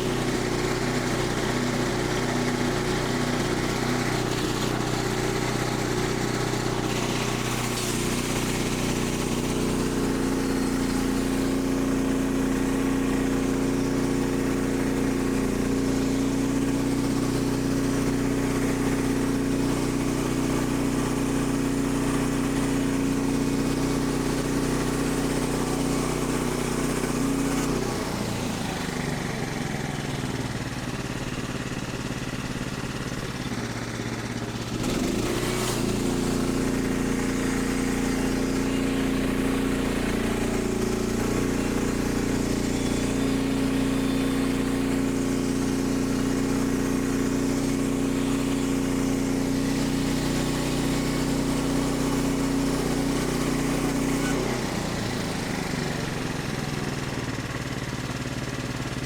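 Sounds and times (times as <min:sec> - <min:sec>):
small gas engine running: 0:00.0 - 0:59.0.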